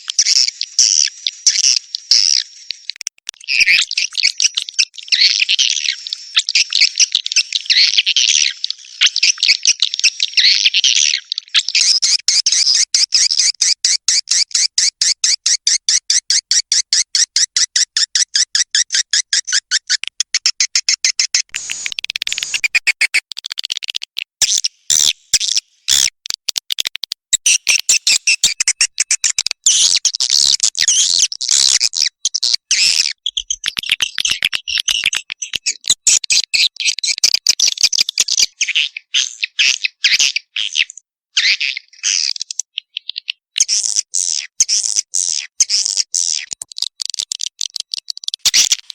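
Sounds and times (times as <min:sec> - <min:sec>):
high bird chirps and twittering: 0:20.6 - 0:26.1, 0:26.8 - 0:40.8.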